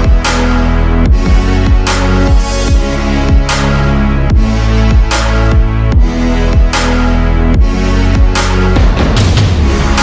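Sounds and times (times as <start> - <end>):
kick drum: 1.1 - 1.9, 8.8 - 10.0.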